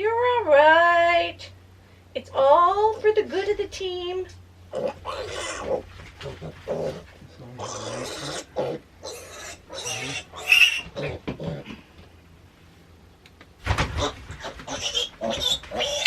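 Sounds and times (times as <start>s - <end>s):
piglet squealing: 4.7s - 7.0s, 7.6s - 11.6s, 14.0s - 16.0s
thump: 13.6s - 14.0s.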